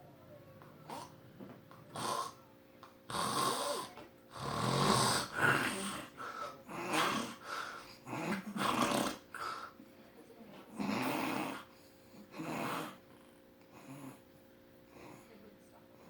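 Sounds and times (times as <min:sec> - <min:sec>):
man snoring and snorting: 0:01.9 - 0:02.4, 0:03.1 - 0:09.4, 0:10.8 - 0:11.7, 0:12.3 - 0:13.0.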